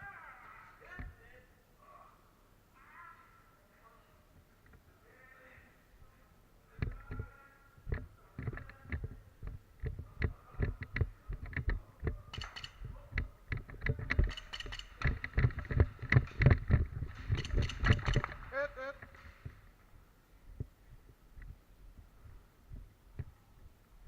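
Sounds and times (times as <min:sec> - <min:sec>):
heavy thuds and knocks: 0:07.9 - 0:18.4.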